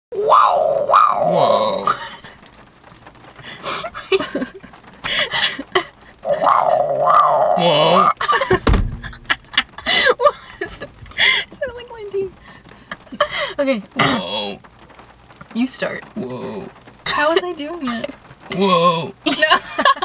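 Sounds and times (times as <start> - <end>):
low thump: 8.4 - 9.8.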